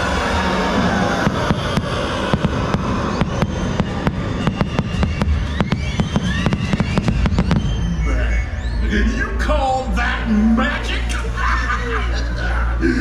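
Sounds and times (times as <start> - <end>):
fireworks bangs and pops: 1.5 - 7.7, 10.8 - 12.5
fireworks whistling: 10.6 - 12.6.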